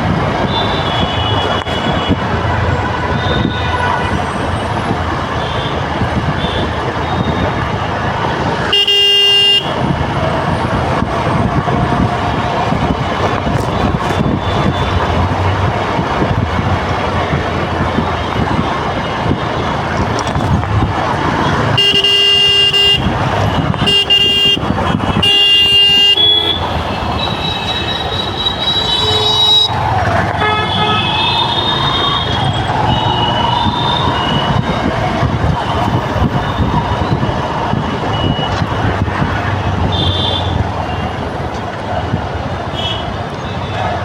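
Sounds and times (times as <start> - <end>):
engine and road noise: 0.0 - 44.0
vehicle horns honking: 0.3 - 4.5, 8.6 - 15.5, 18.0 - 34.9, 39.6 - 41.1, 42.7 - 43.7.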